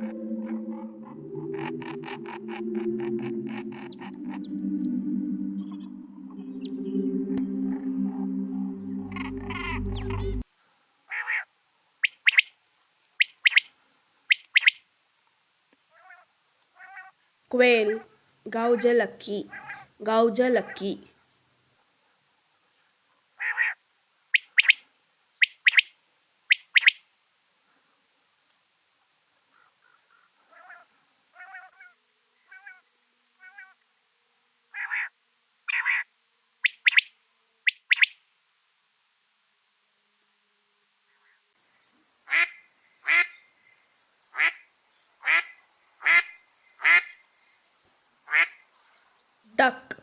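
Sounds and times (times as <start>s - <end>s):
quail calling: 11.1s - 11.4s, 19.5s - 20.0s, 23.4s - 23.8s, 24.4s - 24.8s, 25.4s - 25.9s, 26.5s - 27.0s, 34.8s - 35.1s, 35.7s - 36.0s, 36.6s - 37.1s, 37.7s - 38.1s
duck quacking: 19.4s - 19.9s.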